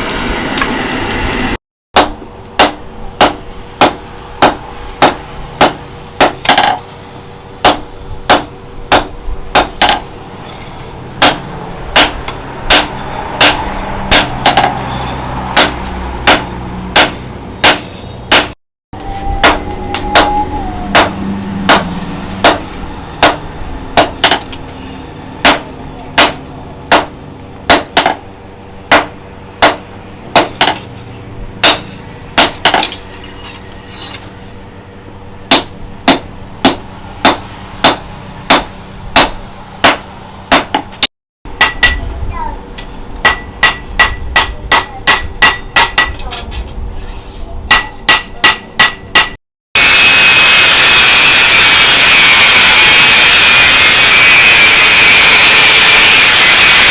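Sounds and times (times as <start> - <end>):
loud harsh steady noise: 0.0 - 33.0, 48.1 - 56.9
hammer striking blade on anvil: 2.0 - 6.8, 7.6 - 18.6, 19.4 - 28.2, 28.9 - 29.8, 31.6 - 34.2, 35.5 - 42.1, 43.2 - 46.3, 47.7 - 49.4.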